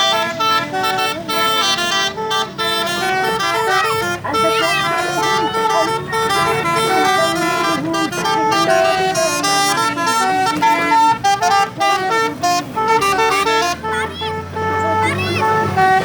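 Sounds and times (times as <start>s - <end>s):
musical horn playing fast melody: 0.0s - 16.0s.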